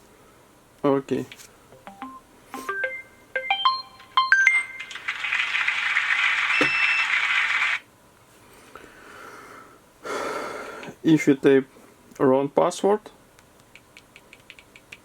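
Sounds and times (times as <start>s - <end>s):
electronic keypad beeps: 1.8s - 4.9s, 6.5s - 7.2s.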